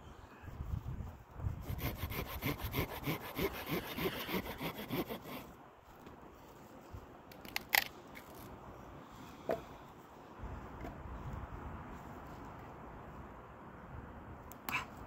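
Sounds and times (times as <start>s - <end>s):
hand saw cutting wood: 1.6s - 5.5s.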